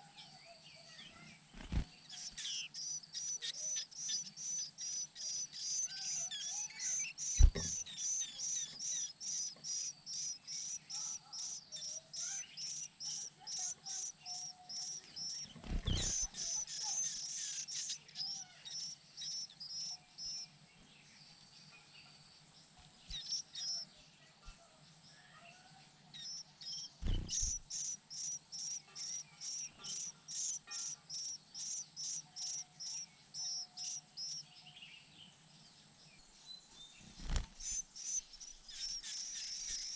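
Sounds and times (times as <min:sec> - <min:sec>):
nestlings' high chirps: 0:01.2 - 0:20.4, 0:23.0 - 0:23.9, 0:26.2 - 0:34.4, 0:37.0 - 0:39.9
dull thumps: 0:07.4 - 0:07.8.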